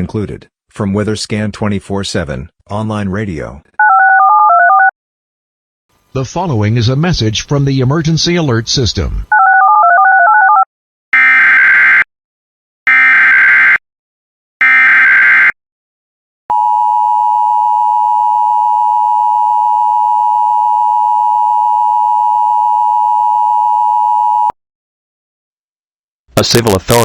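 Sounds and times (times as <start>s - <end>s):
two-tone alarm: 11.2s - 12.1s, 12.9s - 13.8s, 14.6s - 15.6s, 16.5s - 24.6s.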